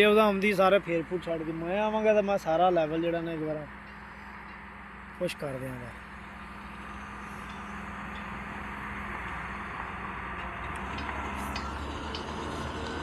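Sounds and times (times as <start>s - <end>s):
vehicle engine humming: 0.0s - 13.0s
light ticks: 10.4s - 13.0s.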